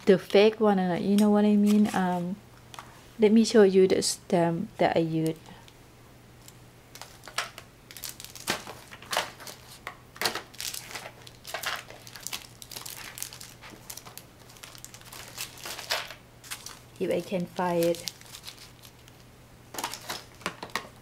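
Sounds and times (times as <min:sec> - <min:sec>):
clicks and crackles: 0:06.4 - 0:21.0
packaging and papers rustling: 0:06.9 - 0:20.9.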